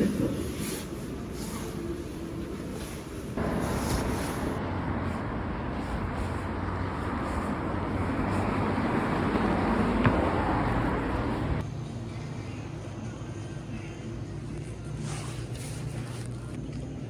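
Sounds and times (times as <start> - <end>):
steady rushing noise: 0.4 - 11.6.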